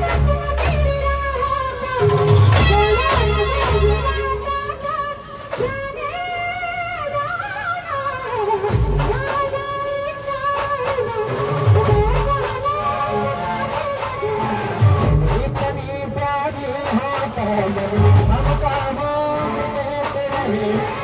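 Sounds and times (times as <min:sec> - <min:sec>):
wavering horn melody: 0:00.0 - 0:05.2
brass band playing: 0:02.0 - 0:04.8
heavy bass drum hits: 0:18.1 - 0:18.7.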